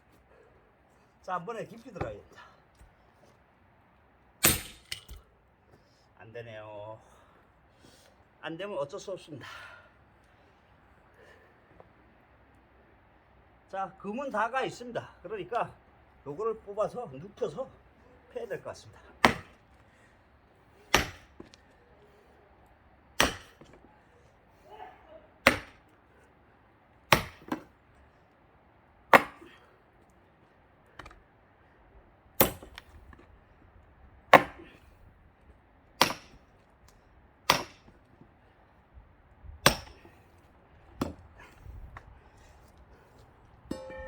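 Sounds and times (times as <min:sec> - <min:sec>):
axe striking log: 0:04.4 - 0:05.2, 0:19.2 - 0:19.6, 0:20.9 - 0:21.6, 0:23.2 - 0:23.8, 0:25.4 - 0:25.8, 0:27.1 - 0:27.7, 0:29.1 - 0:29.6, 0:32.4 - 0:33.0, 0:34.3 - 0:34.8, 0:36.0 - 0:36.5, 0:37.5 - 0:38.0, 0:39.6 - 0:40.2, 0:40.9 - 0:41.2, 0:43.7 - 0:44.0.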